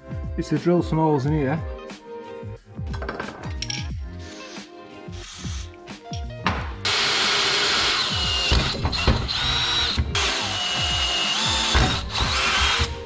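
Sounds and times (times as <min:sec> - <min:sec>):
power drill boring into metal: 0:06.9 - 0:13.0.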